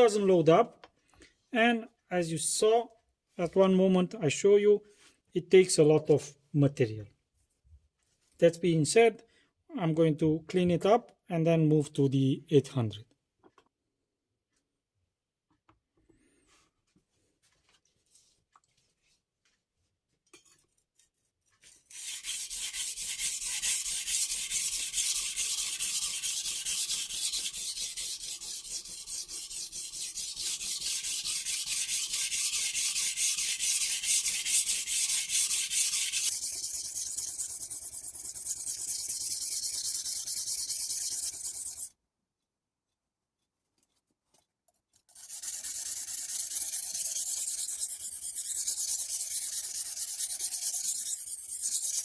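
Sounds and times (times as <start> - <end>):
scraping on a wet whetstone: 21.6 - 41.9, 45.0 - 52.0.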